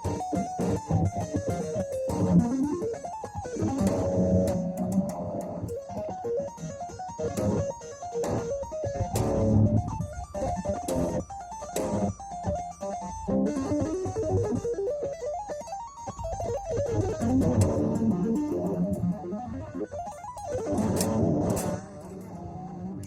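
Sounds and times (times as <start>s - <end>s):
electric guitar playing: 0.0s - 23.0s.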